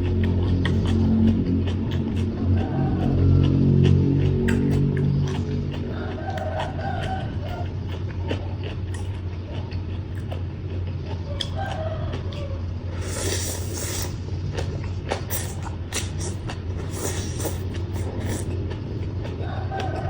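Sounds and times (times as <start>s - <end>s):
chewing and crunching: 0.0s - 20.0s
steady low hum: 0.0s - 20.0s
rooster crowing: 2.4s - 3.7s, 5.9s - 7.7s, 11.3s - 12.6s, 19.4s - 20.0s.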